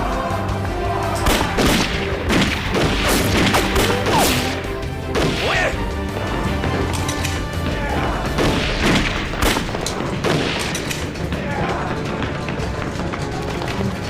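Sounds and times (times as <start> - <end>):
background music: 0.0 - 14.0
gunshots: 1.2 - 5.8, 8.1 - 11.9.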